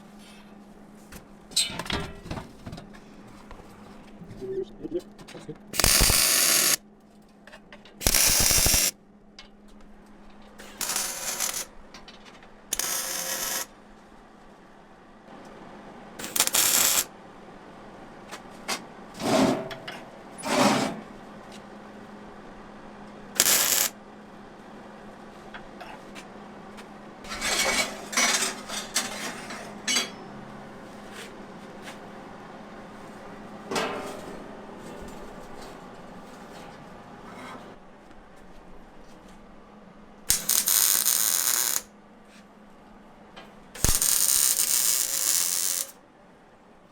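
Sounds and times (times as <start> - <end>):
steady low hum: 0.0 - 20.4.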